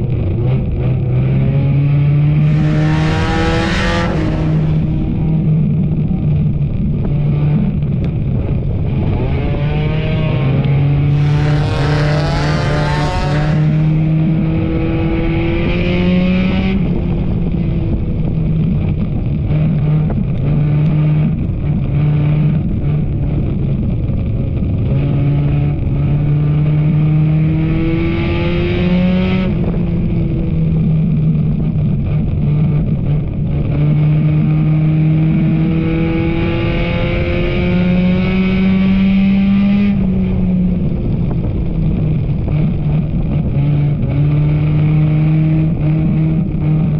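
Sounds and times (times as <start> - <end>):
race car engine revving: 0.0 - 46.9.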